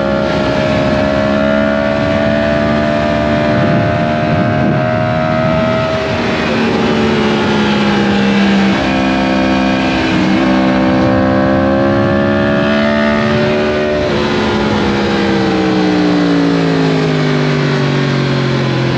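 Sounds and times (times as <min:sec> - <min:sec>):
motorcycle engine running: 0:00.0 - 0:18.9
rushing wind noise: 0:00.0 - 0:18.9.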